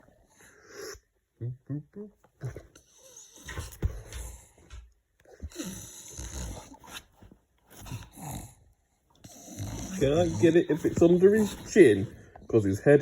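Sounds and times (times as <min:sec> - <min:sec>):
dog snorting and grunting: 0:02.3 - 0:12.5.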